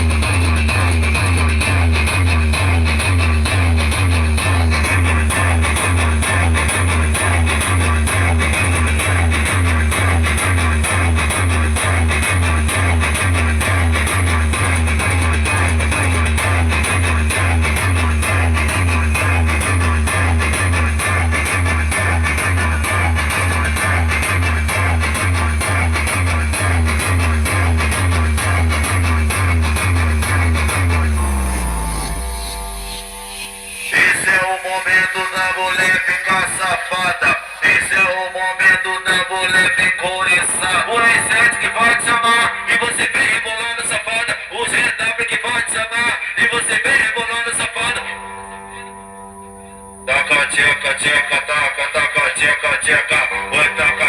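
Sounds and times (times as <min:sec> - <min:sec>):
heavy bass pulses: 0:00.0 - 0:45.9, 0:46.6 - 0:54.0
plucked riff of falling notes: 0:48.0 - 0:50.3.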